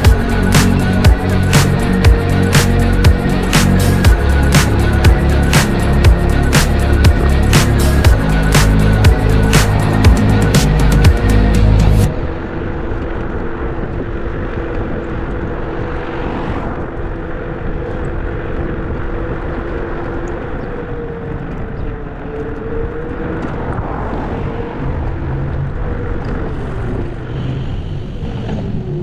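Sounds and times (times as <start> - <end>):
music: 0.0 - 12.1
car road and engine noise: 0.0 - 29.0.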